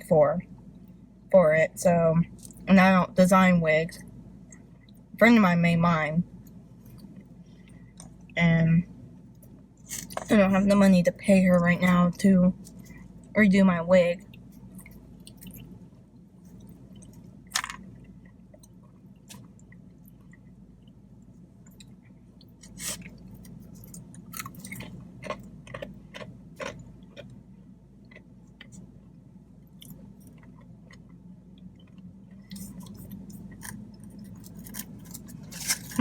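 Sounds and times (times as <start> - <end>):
low steady hum: 0.0 - 36.0
person chewing food: 14.3 - 15.8, 16.4 - 36.0.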